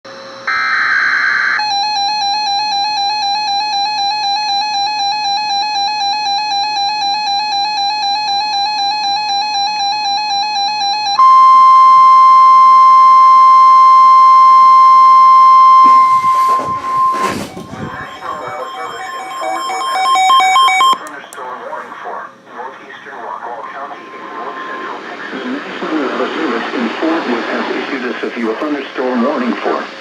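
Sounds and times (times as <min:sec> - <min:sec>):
steady warning alarm tone: 0:00.2 - 0:21.1
warbling electronic alert tone: 0:15.6 - 0:21.0.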